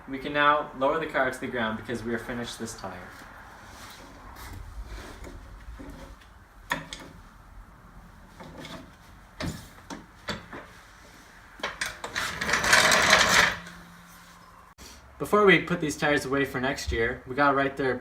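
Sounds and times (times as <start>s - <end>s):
lifting gear clunks and knocks: 8.4s - 10.7s.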